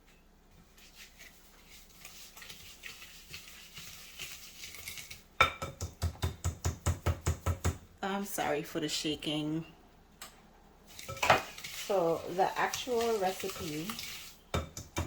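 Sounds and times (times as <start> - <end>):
whisk stirring paste in bowl: 0.6 - 7.6, 10.9 - 15.0
whisk knocking bowl: 10.9 - 15.0.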